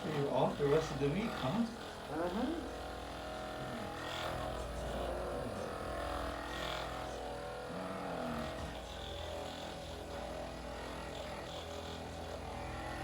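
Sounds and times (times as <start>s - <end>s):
massage gun motor buzzing: 0.0s - 13.0s.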